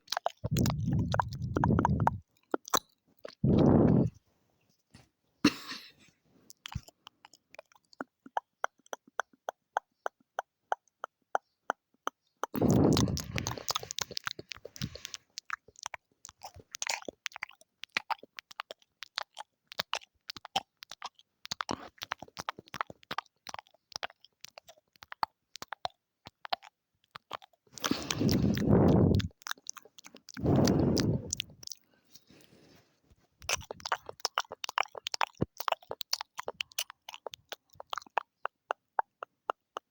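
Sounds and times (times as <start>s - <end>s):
wet mouth clicks and smacks: 0.0s - 4.1s, 6.5s - 32.5s, 33.4s - 39.9s
noisy mouth bursts: 0.4s - 2.2s, 3.4s - 4.2s, 12.6s - 15.2s, 27.8s - 29.4s, 30.3s - 32.6s, 33.4s - 34.5s.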